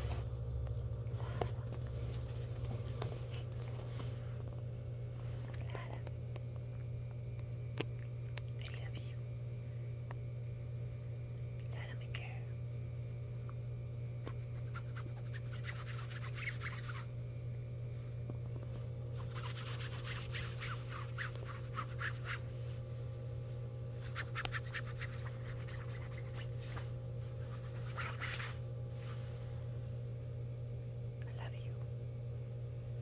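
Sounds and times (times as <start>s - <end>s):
steady low hum: 0.0s - 33.0s
crackly scratching: 1.1s - 4.6s, 14.3s - 17.1s, 18.7s - 23.1s, 24.0s - 29.5s.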